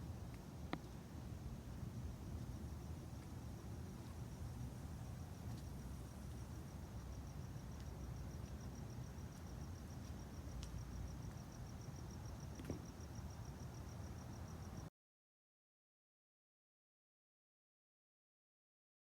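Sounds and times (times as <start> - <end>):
cricket chirping: 0.0 - 14.9.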